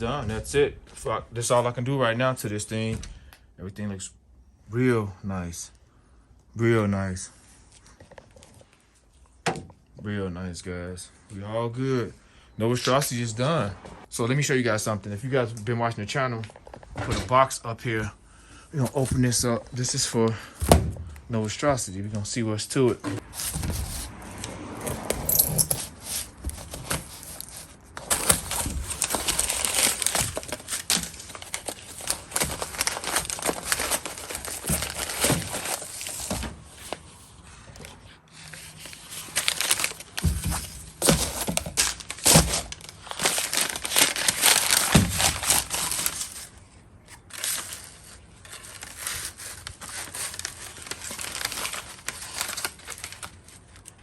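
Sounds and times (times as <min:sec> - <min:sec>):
packing crinkling and rustling: 0:23.2 - 0:54.0
cardboard box tearing: 0:24.9 - 0:36.4, 0:38.9 - 0:46.5.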